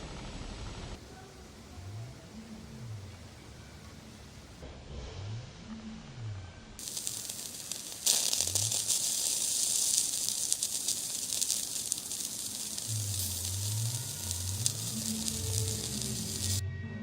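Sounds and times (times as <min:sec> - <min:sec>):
crackling hiss: 0:00.9 - 0:04.6, 0:06.8 - 0:16.6.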